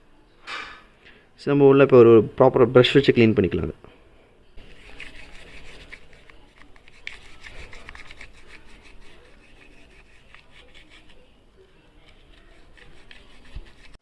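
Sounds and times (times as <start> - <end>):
brush scrubbing metal: 4.6 - 11.3, 12.0 - 14.0.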